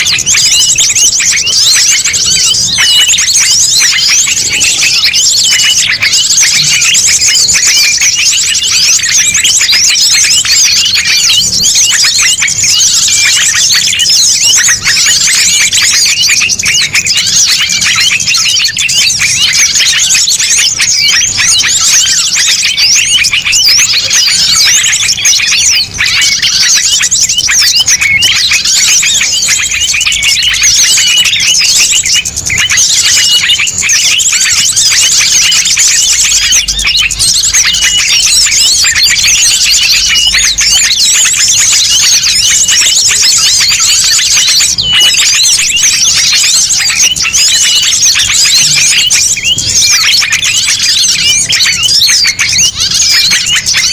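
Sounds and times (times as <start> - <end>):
songbirds chirping and twittering: 0.0 - 53.9.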